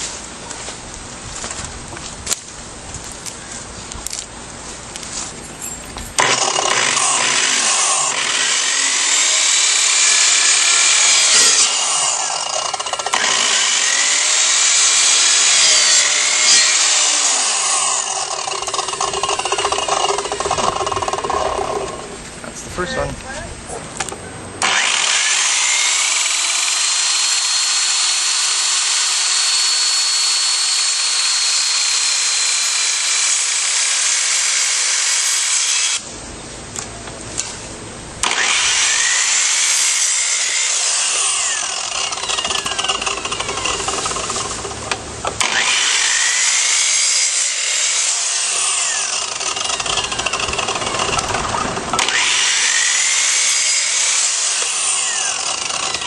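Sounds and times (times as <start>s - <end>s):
chainsaw cutting wood: 6.2s - 22.2s, 24.6s - 36.1s, 38.2s - 56.0s.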